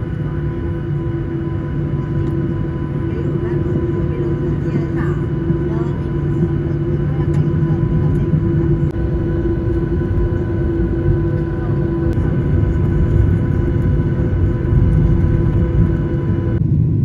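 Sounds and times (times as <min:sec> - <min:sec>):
jet engines rumbling and whining: 0:00.0 - 0:17.0.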